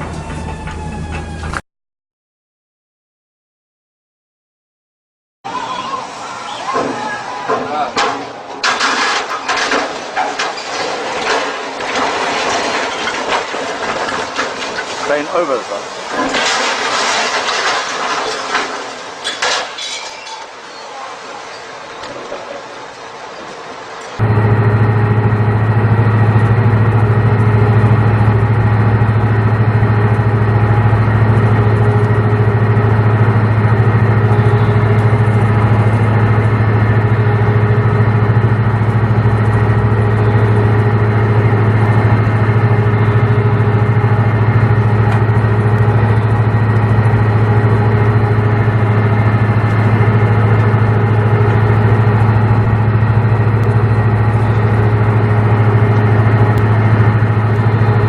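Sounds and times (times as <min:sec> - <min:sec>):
ship engine low drone: 0:00.0 - 0:01.6, 0:20.5 - 0:58.0.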